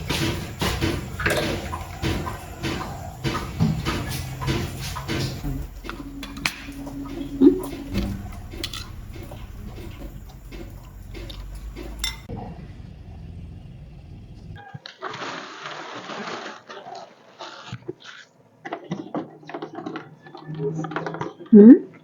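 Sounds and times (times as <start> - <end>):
dishes and utensils clinking: 0.0 - 12.3
low steady hum: 0.0 - 14.6.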